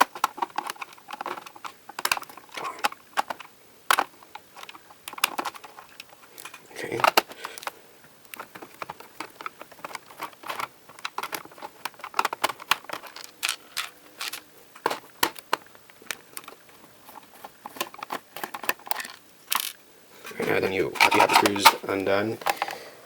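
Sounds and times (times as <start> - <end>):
screwdriver clicking on plastic: 0.0 - 16.6.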